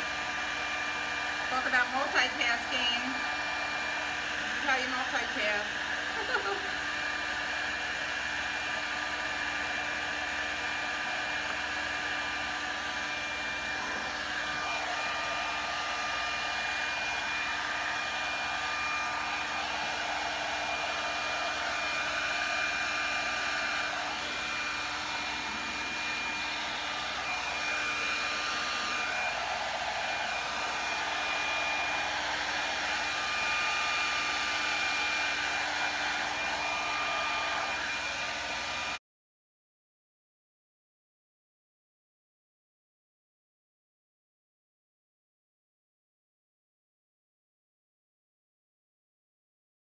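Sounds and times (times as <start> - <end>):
blow dryer running: 0.0 - 39.0.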